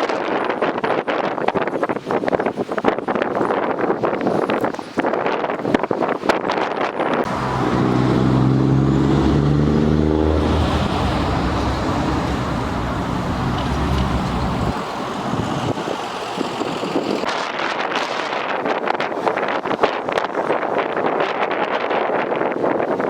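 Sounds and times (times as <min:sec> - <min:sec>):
wind noise: 0:00.0 - 0:23.0
vehicle engine hum: 0:07.3 - 0:17.3.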